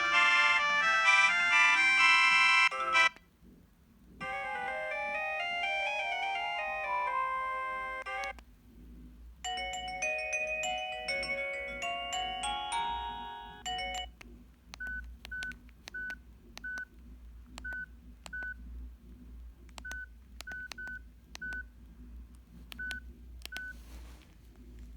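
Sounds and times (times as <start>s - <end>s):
marimba phone ringtone: 9.5s - 14.1s
keypad presses with beeps: 13.7s - 16.9s, 17.6s - 18.6s, 19.7s - 21.7s, 22.7s - 23.8s.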